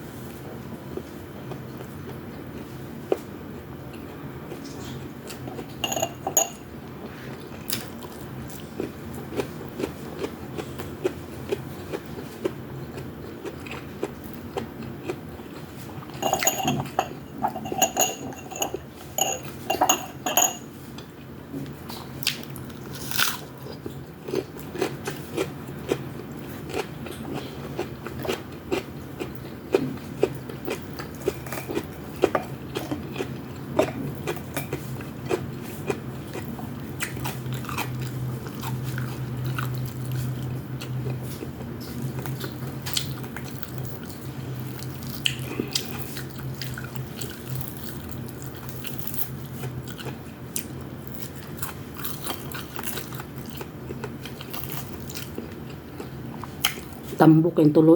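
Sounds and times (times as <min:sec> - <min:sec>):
steady low hum: 0:00.0 - 0:57.9
chewing and biting: 0:07.3 - 0:16.2, 0:21.9 - 0:57.2
utensils clicking on a plate: 0:16.2 - 0:20.6.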